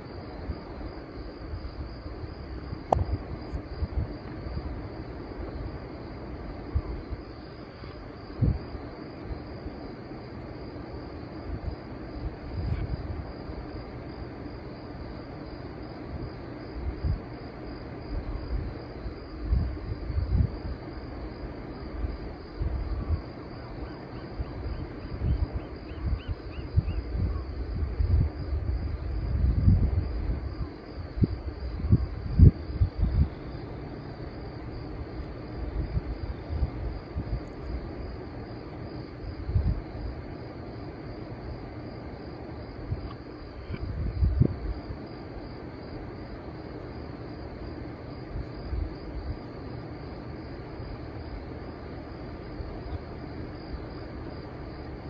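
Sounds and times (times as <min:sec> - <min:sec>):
high-pitched insect trill: 0:00.0 - 0:55.0
faint ticks: 0:02.9 - 0:03.6, 0:43.0 - 0:43.9.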